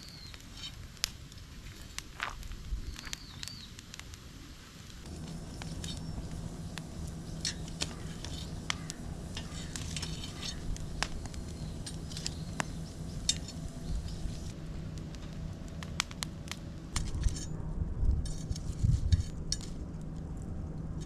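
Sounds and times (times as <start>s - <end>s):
wood fire crackling: 0.0s - 21.0s
steady low hum: 5.0s - 21.0s.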